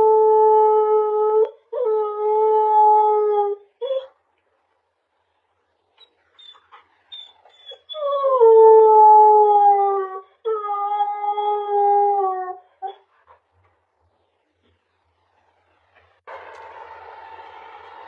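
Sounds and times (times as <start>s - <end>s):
puppy yipping: 6.0s - 8.2s.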